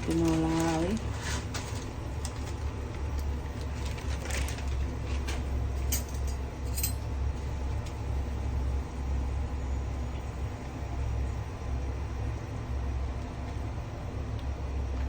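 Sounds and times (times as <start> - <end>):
noodles clinking and rustling: 0.0 - 7.0
water boiling in a pot: 0.0 - 15.0.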